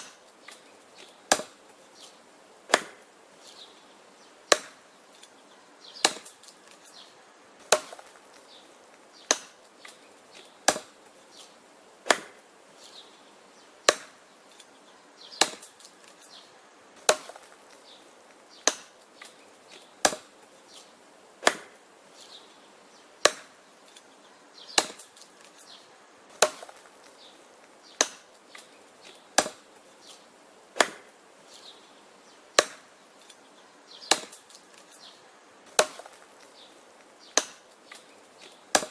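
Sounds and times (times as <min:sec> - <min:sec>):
wood chopping blows: 0:00.0 - 0:03.1, 0:04.5 - 0:04.8, 0:06.0 - 0:06.9, 0:07.6 - 0:12.4, 0:13.8 - 0:14.7, 0:15.4 - 0:16.3, 0:17.0 - 0:21.8, 0:23.2 - 0:24.0, 0:24.7 - 0:25.6, 0:26.3 - 0:31.2, 0:32.6 - 0:32.9, 0:34.0 - 0:35.0, 0:35.7 - 0:38.9.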